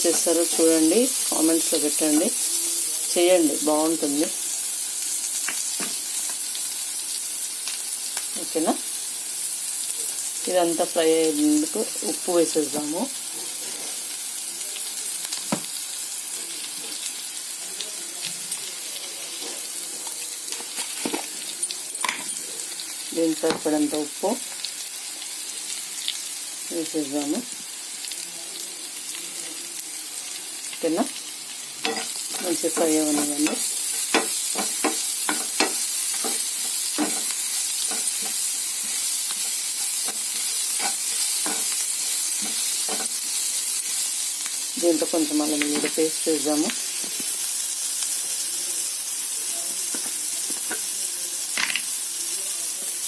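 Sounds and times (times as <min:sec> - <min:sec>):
oil sizzling in a pan: 0:00.0 - 0:53.0
spoon scraping and knocking pan: 0:20.5 - 0:22.4, 0:31.8 - 0:41.8, 0:42.4 - 0:43.2, 0:49.9 - 0:50.9.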